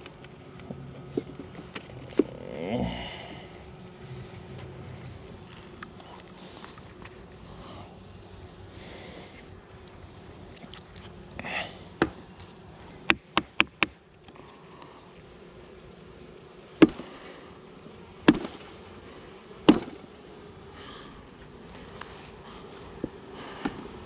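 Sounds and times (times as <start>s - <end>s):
honey bees humming: 0.0s - 24.0s
sharp knocks: 19.6s - 20.0s.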